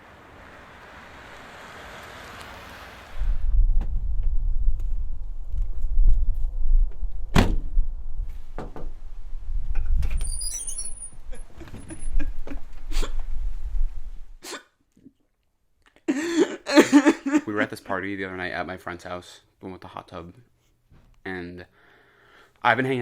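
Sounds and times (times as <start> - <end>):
loud low rumble: 3.2 - 8.3
sharp thunks: 7.3 - 7.8.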